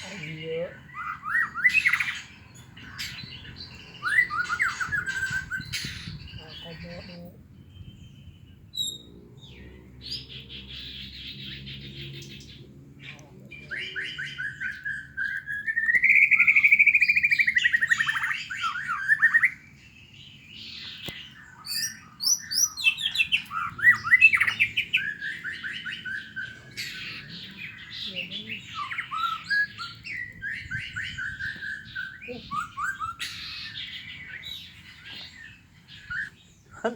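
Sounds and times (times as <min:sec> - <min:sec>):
bird harsh chattering: 0:00.0 - 0:07.1
bird singing trills: 0:00.0 - 0:36.9.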